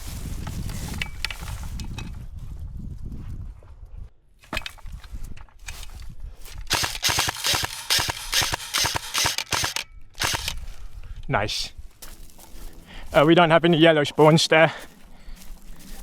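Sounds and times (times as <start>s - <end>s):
scattered clicks: 6.5s - 10.6s
airsoft guns firing: 6.7s - 10.6s.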